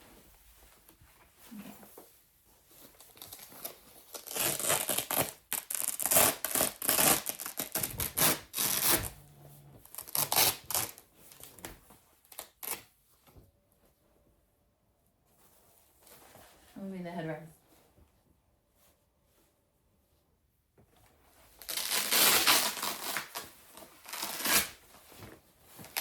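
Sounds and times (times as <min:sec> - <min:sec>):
velcro ripping: 0:03.1 - 0:11.5, 0:12.3 - 0:12.9, 0:21.6 - 0:24.9.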